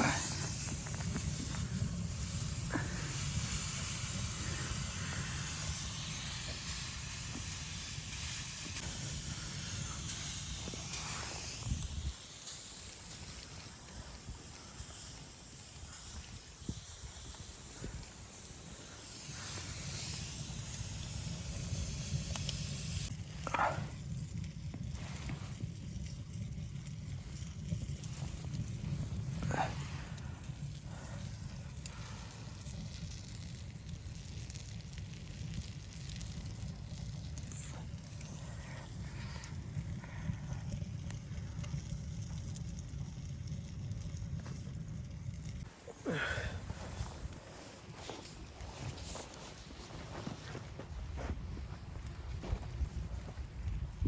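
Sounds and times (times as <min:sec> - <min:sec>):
small crackles and ticks: 0:00.0 - 0:45.7
low fluctuating rumble: 0:13.2 - 0:45.7.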